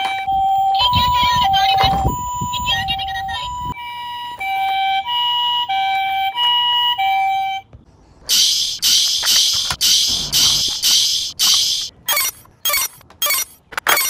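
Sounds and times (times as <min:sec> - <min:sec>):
ambulance two-tone siren: 0:00.0 - 0:07.7
rhythmic high hissing chirp: 0:08.3 - 0:11.9.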